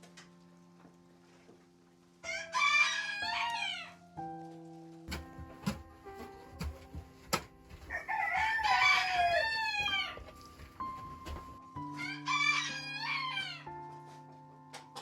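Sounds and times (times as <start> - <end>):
soft background music: 0.0 - 15.0
rooster crowing: 2.2 - 4.0, 7.8 - 10.4, 12.0 - 13.7.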